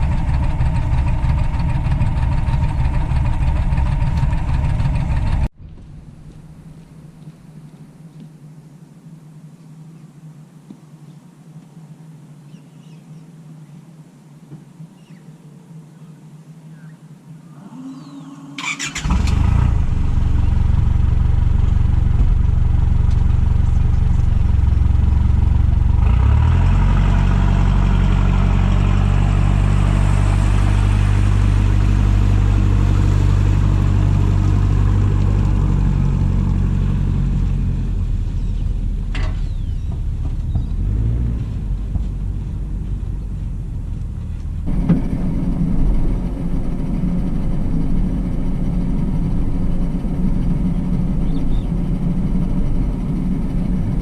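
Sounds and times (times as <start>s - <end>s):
boat engine running: 0.0s - 5.6s, 17.8s - 54.0s.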